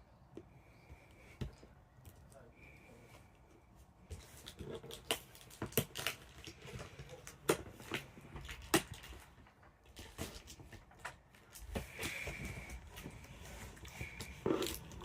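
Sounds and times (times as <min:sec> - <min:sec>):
cardboard box packaging being opened: 0:04.2 - 0:15.0.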